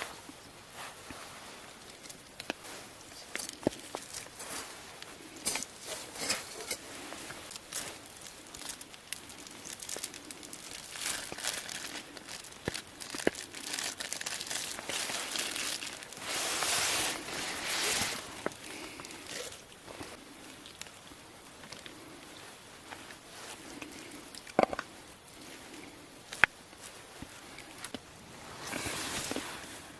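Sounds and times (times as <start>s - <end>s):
packaging crinkling: 7.5s - 19.7s.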